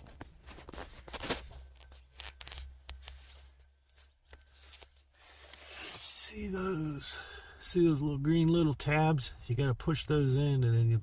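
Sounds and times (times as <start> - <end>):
hands rustling and scraping: 0.0 - 6.3.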